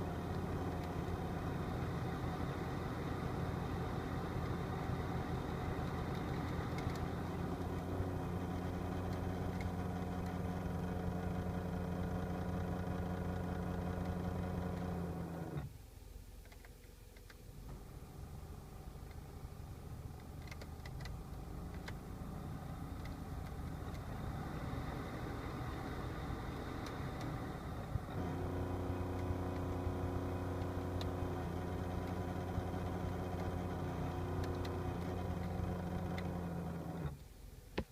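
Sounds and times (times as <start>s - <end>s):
blower motor humming: 21.0s - 37.2s.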